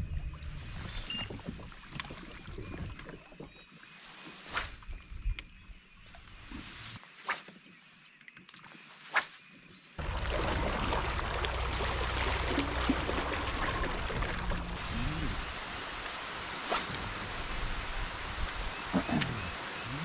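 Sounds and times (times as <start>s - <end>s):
waterfall rushing: 10.0s - 20.0s.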